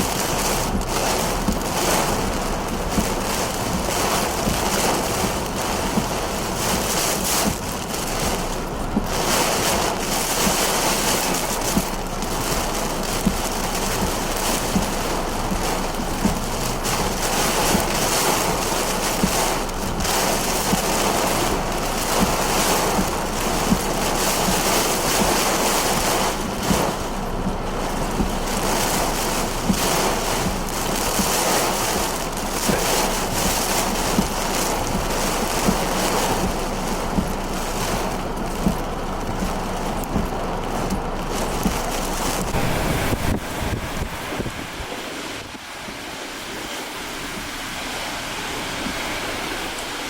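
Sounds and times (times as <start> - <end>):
heavy rain: 0.0 - 50.0
wind buffeting microphone: 40.9 - 50.0
strong wind: 42.1 - 50.0.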